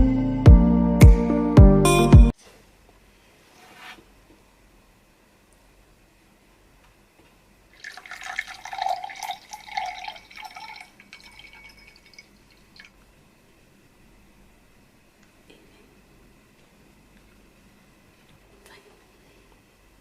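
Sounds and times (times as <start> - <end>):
liquid dripping: 7.7 - 13.1
drink pouring into a glass: 7.8 - 13.0.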